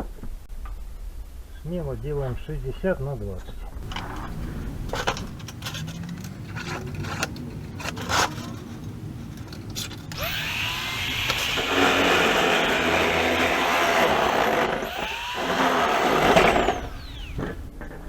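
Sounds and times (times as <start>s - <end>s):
tools clicking and knocking: 3.8s - 10.4s
power tool whining: 3.8s - 17.7s.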